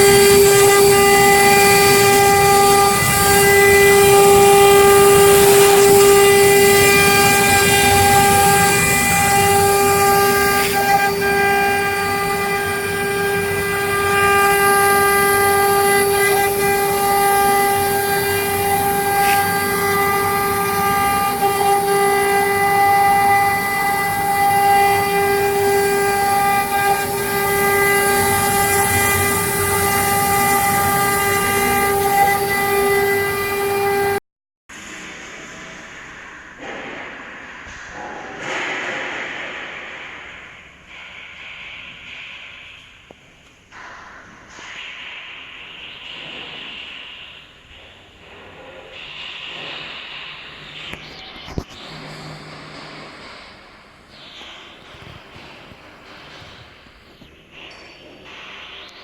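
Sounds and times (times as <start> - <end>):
router spindles whining: 0.0 - 34.2.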